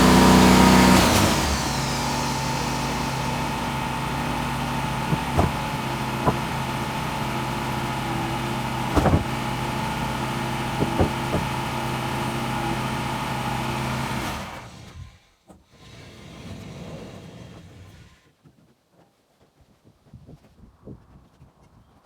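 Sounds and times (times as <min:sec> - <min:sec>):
engine running: 0:00.0 - 0:18.2
sharp knocks: 0:05.0 - 0:06.8, 0:08.8 - 0:09.5, 0:10.7 - 0:11.8.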